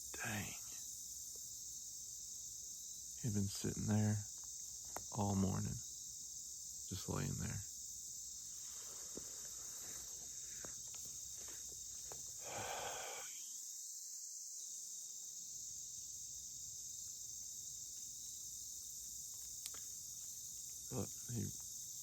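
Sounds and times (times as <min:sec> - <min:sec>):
crickets chirping: 0:00.0 - 0:22.0
soft rustle: 0:08.5 - 0:12.3.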